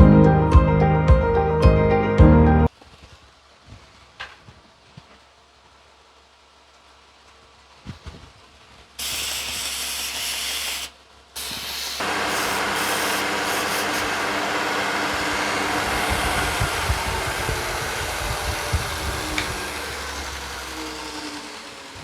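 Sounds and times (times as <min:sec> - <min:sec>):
workshop power machine running: 0:09.0 - 0:22.0.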